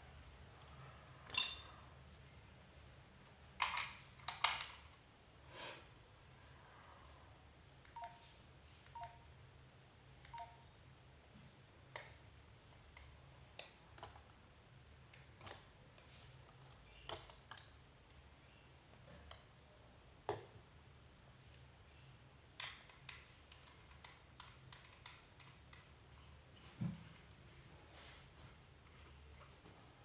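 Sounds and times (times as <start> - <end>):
small clicks and taps: 22.6 - 26.3.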